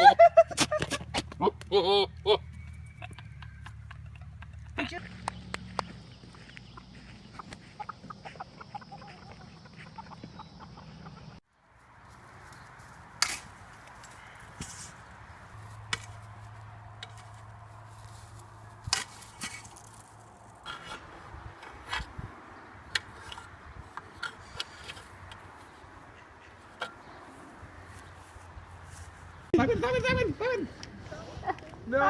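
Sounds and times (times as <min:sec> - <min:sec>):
scraping: 0:13.1 - 0:25.8.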